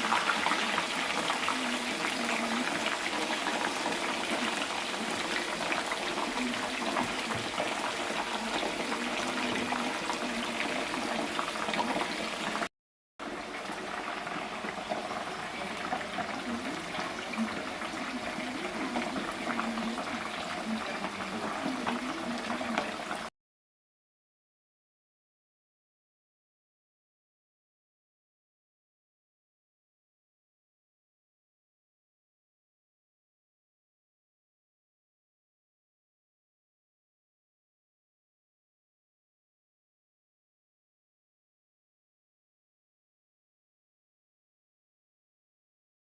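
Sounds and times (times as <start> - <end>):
liquid bubbling in cooking pot: 0.0 - 23.3.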